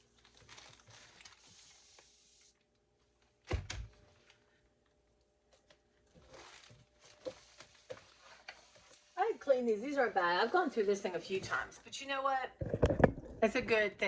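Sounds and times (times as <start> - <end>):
household items rustling: 6.0 - 11.9.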